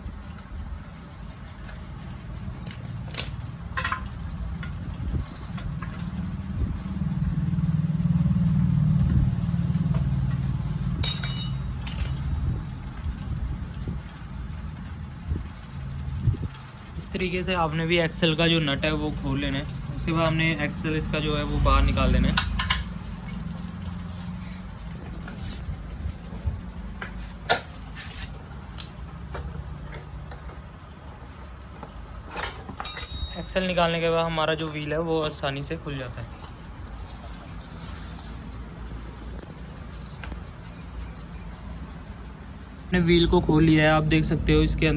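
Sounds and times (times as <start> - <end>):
vehicle engine running: 0.0 - 32.3
spanner clinking on metal: 2.5 - 6.2, 11.0 - 12.3, 21.7 - 24.0, 32.3 - 35.5.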